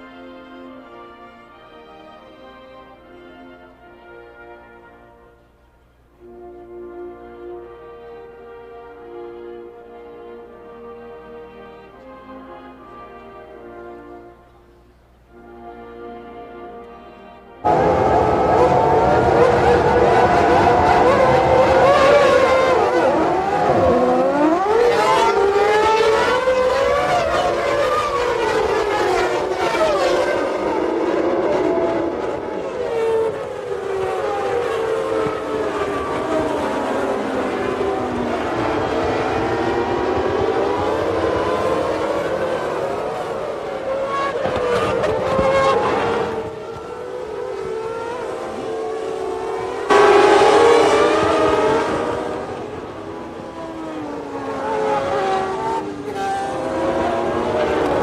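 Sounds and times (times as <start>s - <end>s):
racing engines revving: 17.6s - 58.0s.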